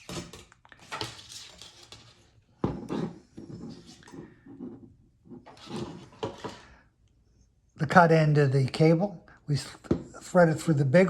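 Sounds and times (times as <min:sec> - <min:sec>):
rustling and scraping: 0:00.0 - 0:06.8.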